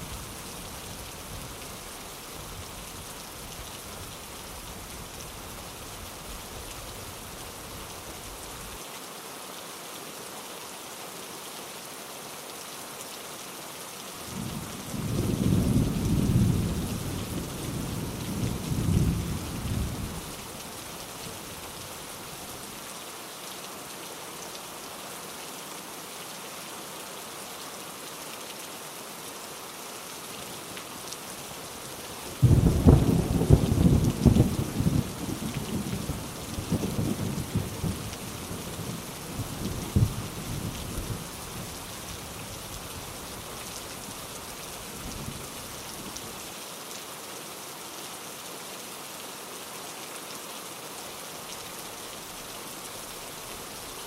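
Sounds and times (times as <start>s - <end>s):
heavy rain: 0.0s - 54.0s
thunder rumbling and crackling: 32.4s - 38.1s, 38.8s - 40.7s.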